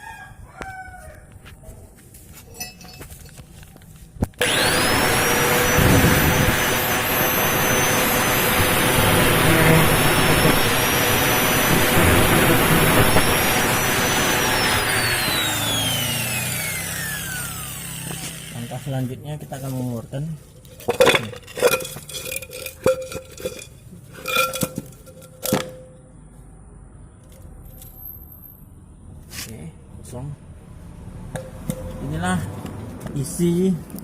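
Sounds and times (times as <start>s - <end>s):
angle grinder whining: 4.3s - 19.5s.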